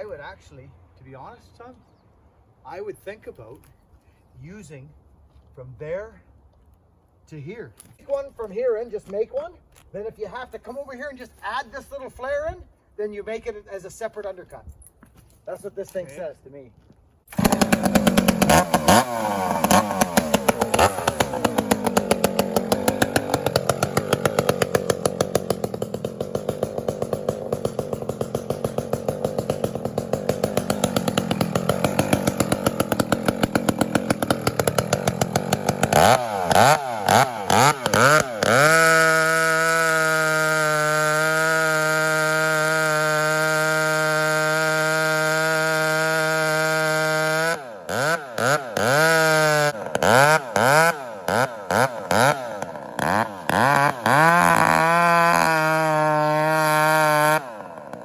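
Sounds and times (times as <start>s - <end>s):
chainsaw running under load: 17.3s - 58.0s.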